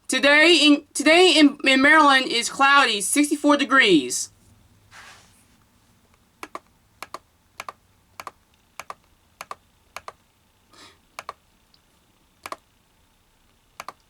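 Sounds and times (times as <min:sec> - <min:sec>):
computer mouse clicks: 0:06.4 - 0:10.2, 0:11.2 - 0:11.4, 0:12.4 - 0:12.6, 0:13.5 - 0:14.0.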